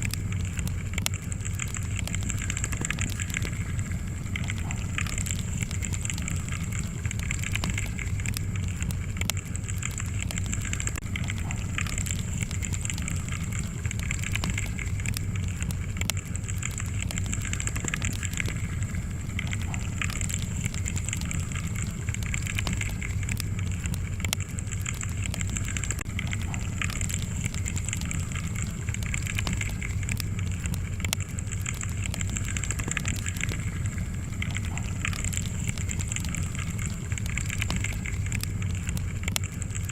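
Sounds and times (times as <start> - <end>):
wood fire crackling: 0.0 - 39.9.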